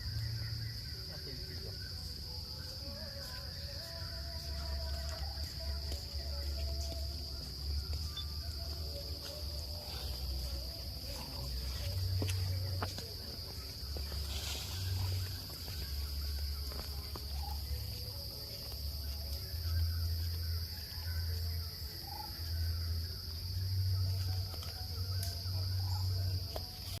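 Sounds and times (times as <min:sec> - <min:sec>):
high-pitched insect drone: 0:00.0 - 0:27.0.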